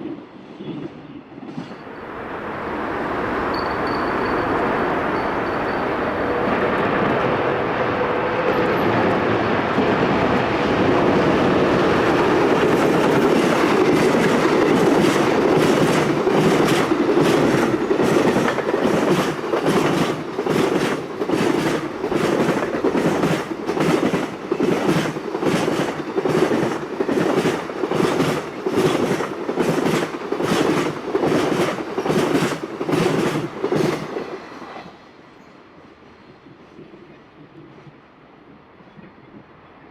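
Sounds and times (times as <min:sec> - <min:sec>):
train wheels clicking over rail joints: 0:11.8 - 0:34.4.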